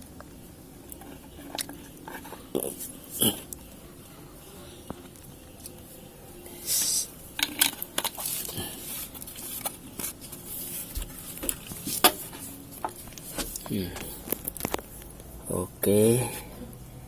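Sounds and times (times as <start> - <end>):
short hiss: 6.6 - 7.1.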